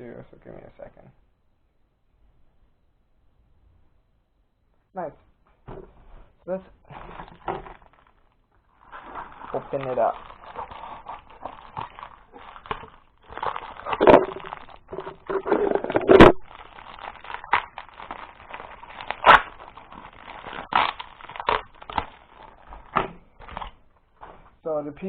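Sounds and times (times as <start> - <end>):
plastic packaging crackling: 6.8 - 24.4.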